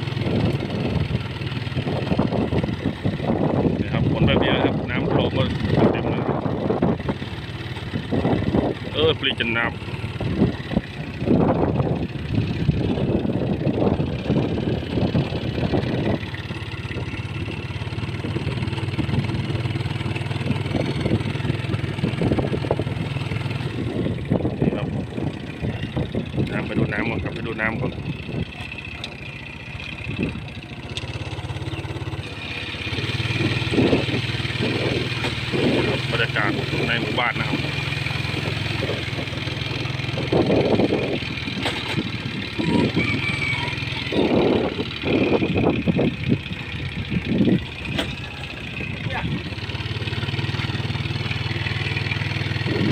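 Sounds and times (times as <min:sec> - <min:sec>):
vehicle engine running: 0:00.0 - 0:52.9
knocks and rattles: 0:41.4 - 0:42.2.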